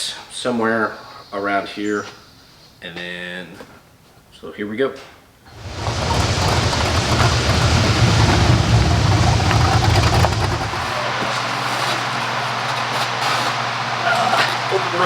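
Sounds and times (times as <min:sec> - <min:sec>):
vehicle engine rumble: 0:05.5 - 0:11.6
road noise: 0:05.5 - 0:14.0.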